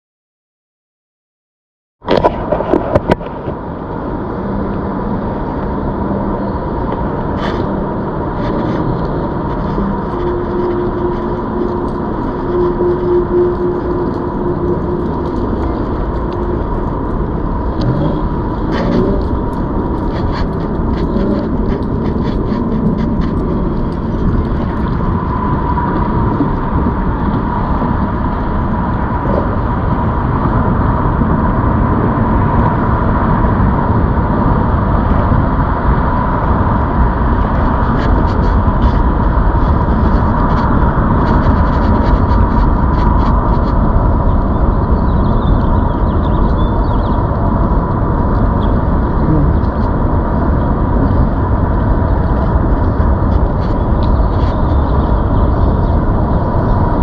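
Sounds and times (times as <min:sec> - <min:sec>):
electric bike rolling rumble: 0:02.0 - 0:57.0
thin steady whine: 0:02.1 - 0:57.0
wind rushing: 0:02.1 - 0:57.0.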